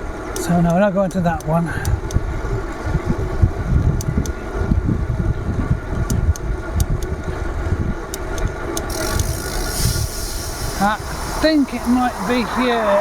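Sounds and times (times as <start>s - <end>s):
road rumble: 0.0s - 13.0s
traffic engine hum: 0.0s - 13.0s
wind buffeting microphone: 0.0s - 13.0s
sharp ticks: 0.3s - 2.2s, 3.8s - 4.4s, 6.0s - 7.2s, 8.1s - 13.0s.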